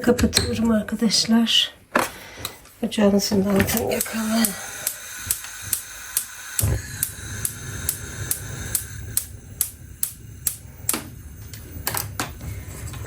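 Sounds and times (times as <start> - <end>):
low steady flame rumble: 2.6 - 13.0
gas stove igniter clicking: 3.3 - 13.0.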